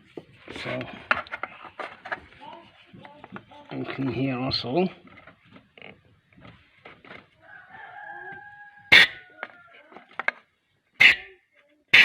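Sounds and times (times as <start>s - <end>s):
rooster crowing: 7.4s - 10.0s.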